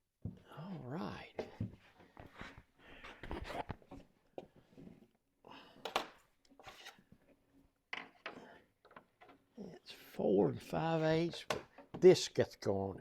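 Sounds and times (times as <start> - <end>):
wood and tools knocking and scraping: 1.4 - 5.1, 5.8 - 9.6, 10.6 - 12.2.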